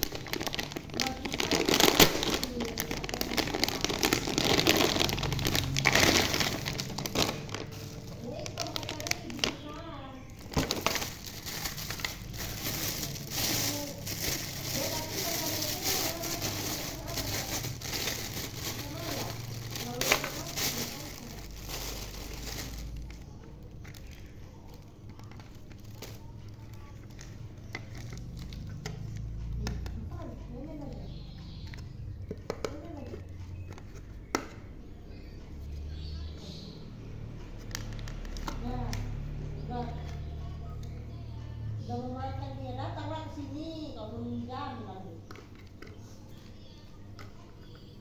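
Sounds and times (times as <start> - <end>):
packaging crinkling: 0.0 - 29.0.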